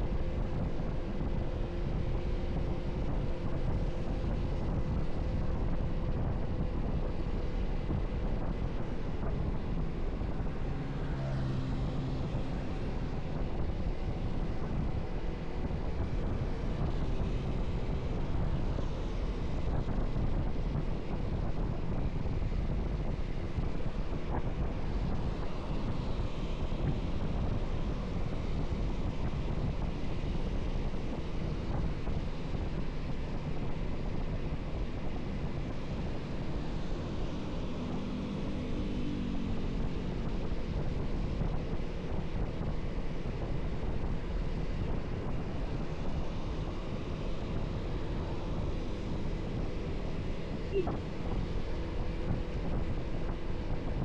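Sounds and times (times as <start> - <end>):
road noise: 0.0 - 54.0
wind rush on microphone: 0.0 - 54.0
faint pitched drone: 50.6 - 53.0.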